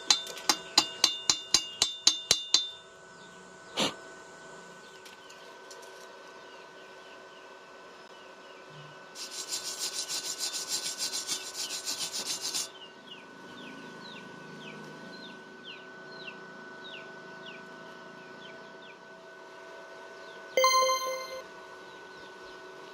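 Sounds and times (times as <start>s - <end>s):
short falling chirps: 20.6s - 21.4s.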